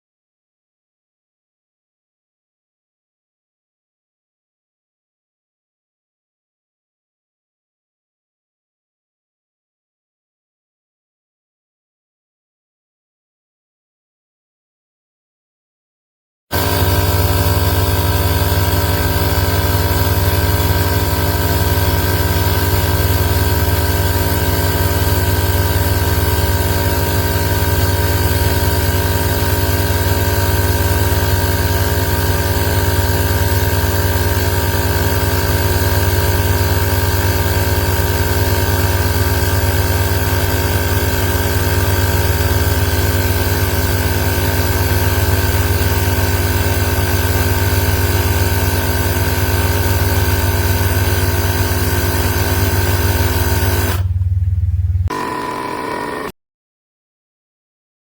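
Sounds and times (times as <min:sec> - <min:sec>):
tire inflator compressor humming: 0:16.5 - 0:56.4.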